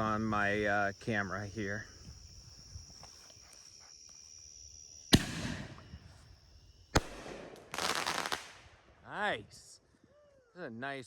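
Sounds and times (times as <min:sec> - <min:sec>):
crickets chirping: 0:00.0 - 0:11.0
firework launch bang: 0:05.1 - 0:06.0, 0:07.0 - 0:08.7.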